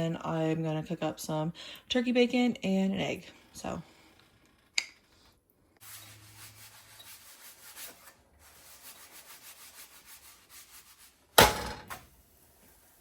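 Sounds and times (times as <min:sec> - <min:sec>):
spatula scraping frying pan: 0:03.3 - 0:13.0.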